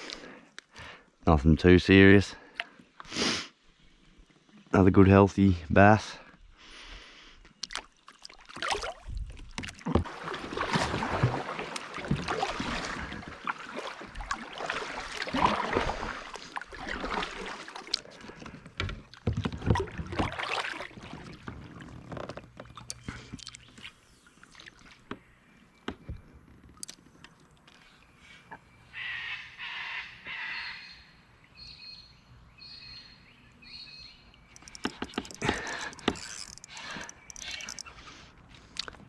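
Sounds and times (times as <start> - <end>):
water sloshing around hull: 7.5 - 28.7, 34.3 - 39.0
paddle splashing: 7.6 - 27.6, 34.5 - 38.3.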